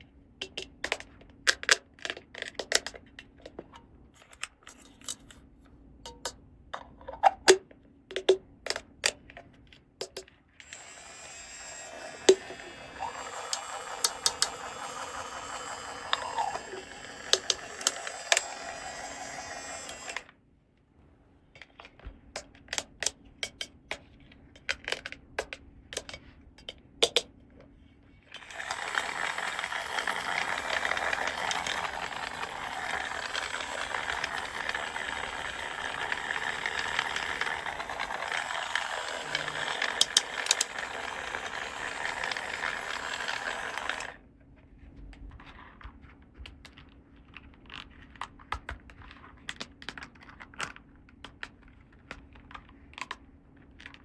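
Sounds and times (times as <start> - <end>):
plastic toy pieces clicking: 0.4 - 5.4, 6.1 - 9.3, 10.0 - 20.3, 21.6 - 27.3, 28.4 - 44.2, 46.6 - 54.0.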